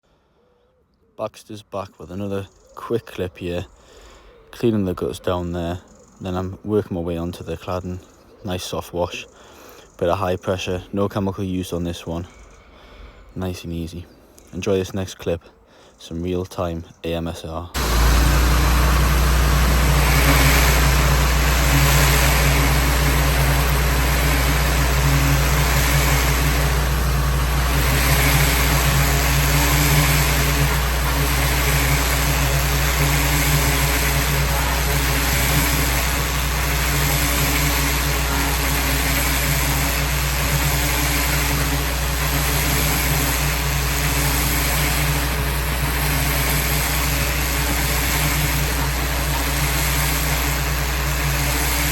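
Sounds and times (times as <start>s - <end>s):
pressure washer engine hum: 17.8s - 51.9s
water jet hissing: 17.8s - 51.9s.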